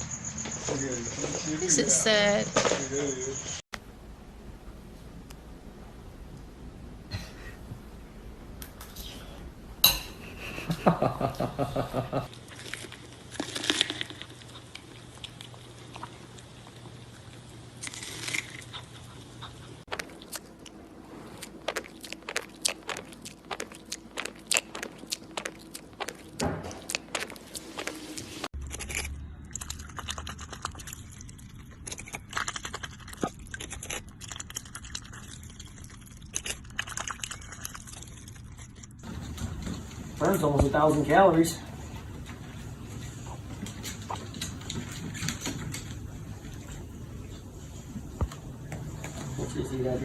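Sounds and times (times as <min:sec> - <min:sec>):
crunching and chewing: 0:12.2 - 0:50.0.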